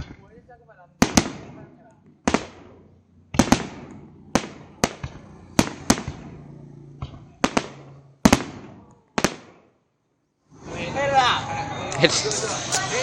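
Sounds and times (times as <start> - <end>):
fireworks bursting: 0.0 - 9.8.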